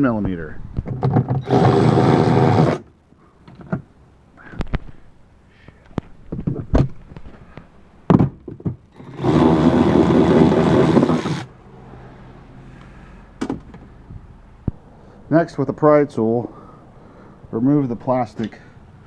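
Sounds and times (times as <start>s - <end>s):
power driver running: 1.4s - 2.8s, 9.0s - 11.5s.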